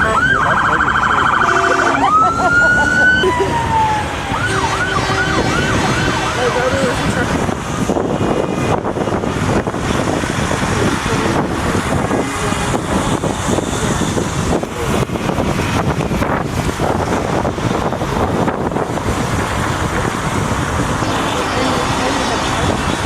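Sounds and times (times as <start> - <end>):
emergency vehicle siren yelping: 0.0 - 10.5
wind on microphone: 0.0 - 23.0
heavy trucks rolling past: 0.9 - 23.0.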